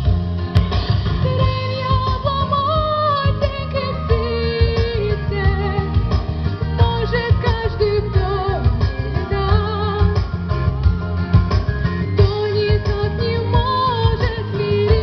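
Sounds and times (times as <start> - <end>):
backing track with steady beat: 0.0 - 15.0
woman singing: 1.2 - 10.4, 12.2 - 15.0.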